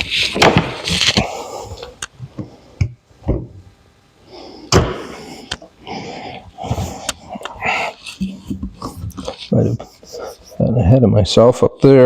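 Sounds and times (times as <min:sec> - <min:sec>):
rubber rubbing and scraping: 0:07.7 - 0:10.7.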